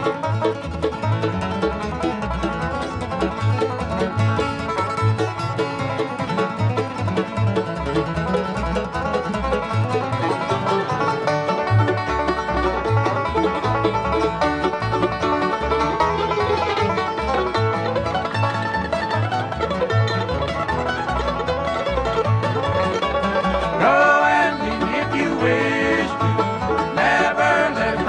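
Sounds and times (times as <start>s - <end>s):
banjo: 0.0s - 28.0s
guitar: 0.0s - 28.0s
mandolin: 0.0s - 28.0s
plucked bass: 0.0s - 28.0s.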